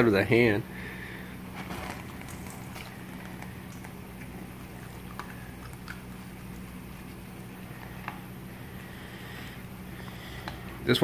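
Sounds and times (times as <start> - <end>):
steady low hum: 0.0 - 11.0
animal chewing and biting: 1.6 - 8.3.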